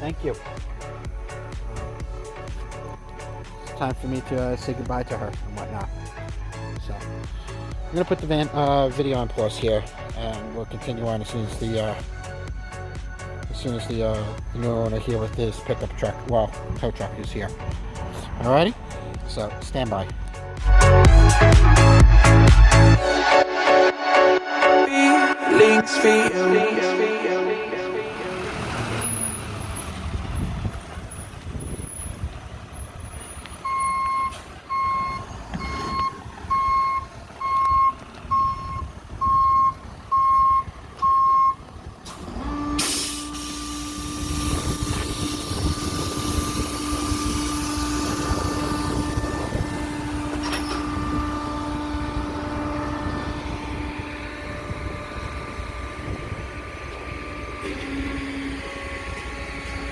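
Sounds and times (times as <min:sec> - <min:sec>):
truck engine rumble: 0:00.0 - 0:23.0, 0:25.5 - 0:59.9
truck reverse alarm beeping: 0:32.8 - 0:59.9.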